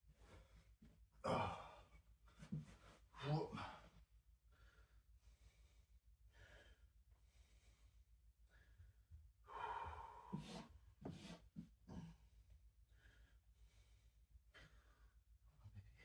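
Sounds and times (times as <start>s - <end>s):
person breathing heavily: 4.5s - 10.7s.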